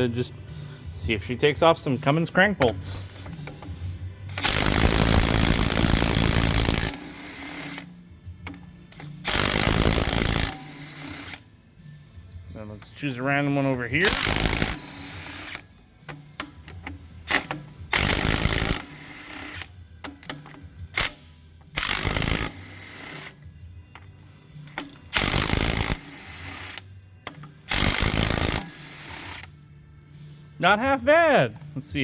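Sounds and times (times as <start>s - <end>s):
impact wrench hammering: 2.5s - 11.4s, 14.0s - 29.5s
socket and bolts clattering: 2.6s - 5.6s.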